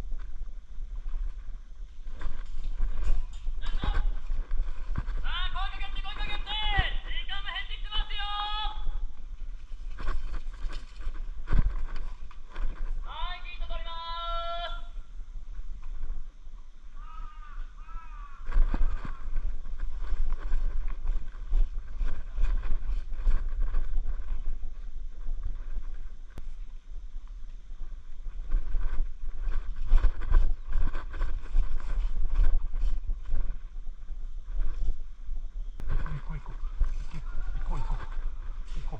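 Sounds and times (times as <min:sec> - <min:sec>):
rustling and scuffing movement: 0:09.1 - 0:14.1, 0:18.4 - 0:38.9
wind buffeting microphone: 0:14.8 - 0:38.9.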